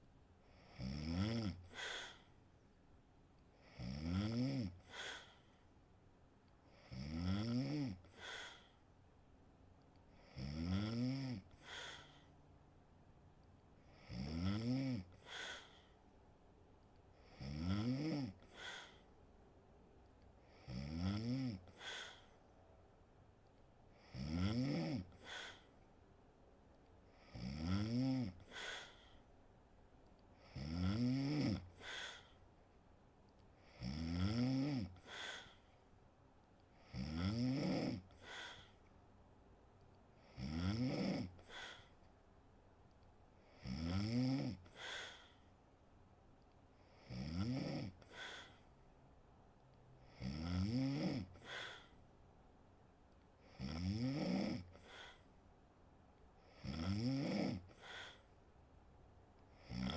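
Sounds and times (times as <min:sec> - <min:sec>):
woman snoring: 0:00.5 - 0:02.3, 0:03.6 - 0:05.4, 0:06.7 - 0:08.7, 0:10.2 - 0:12.2, 0:13.9 - 0:15.8, 0:17.2 - 0:19.0, 0:20.5 - 0:22.3, 0:24.0 - 0:25.7, 0:27.2 - 0:29.0, 0:30.4 - 0:32.4, 0:33.7 - 0:35.6, 0:36.9 - 0:38.8, 0:40.2 - 0:41.9, 0:43.6 - 0:45.3, 0:46.9 - 0:48.6, 0:50.1 - 0:51.9, 0:53.4 - 0:55.2, 0:56.5 - 0:58.2, 0:59.6 - 0:59.9
puff of breath: 0:01.7 - 0:02.4, 0:04.8 - 0:05.5, 0:08.1 - 0:08.8, 0:11.6 - 0:12.3, 0:15.2 - 0:16.0, 0:18.5 - 0:19.0, 0:21.7 - 0:22.4, 0:25.2 - 0:25.7, 0:28.5 - 0:29.2, 0:31.8 - 0:32.4, 0:35.0 - 0:35.7, 0:41.4 - 0:42.0, 0:44.7 - 0:45.4, 0:48.0 - 0:48.6, 0:51.4 - 0:52.0, 0:54.8 - 0:55.3, 0:57.7 - 0:58.3.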